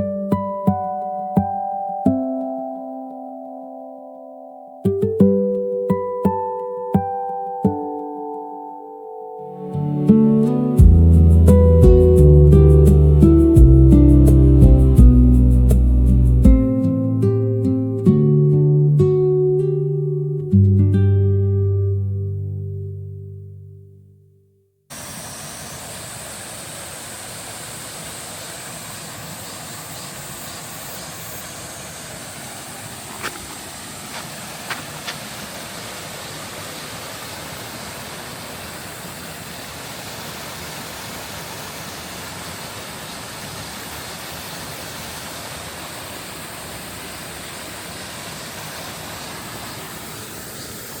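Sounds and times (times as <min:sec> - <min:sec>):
stream rushing over rocks: 0:24.9 - 0:51.0.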